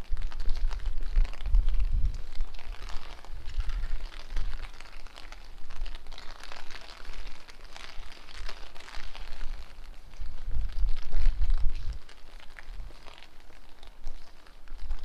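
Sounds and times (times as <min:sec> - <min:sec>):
wind buffeting microphone: 0:00.0 - 0:06.1, 0:09.2 - 0:12.1
rain pattering: 0:00.0 - 0:15.0.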